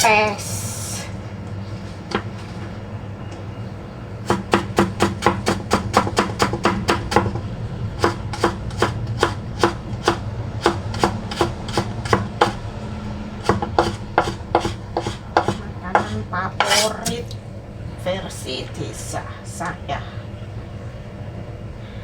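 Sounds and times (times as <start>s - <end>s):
knife slicing on cutting board: 13.4s - 17.2s.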